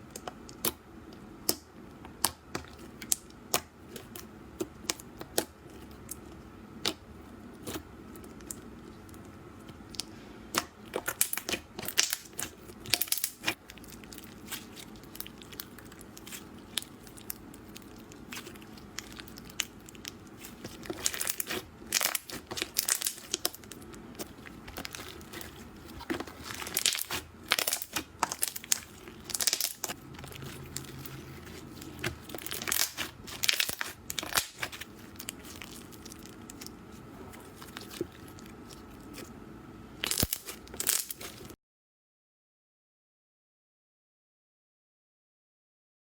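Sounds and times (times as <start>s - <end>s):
slime crackling and popping: 9.8s - 39.3s, 40.0s - 41.6s.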